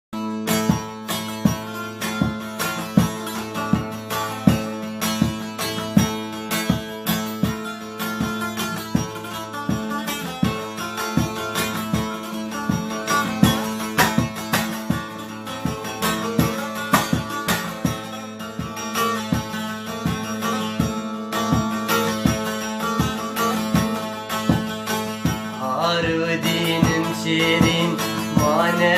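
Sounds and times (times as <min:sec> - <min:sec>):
plucked string instrument: 0:00.1 - 0:28.9.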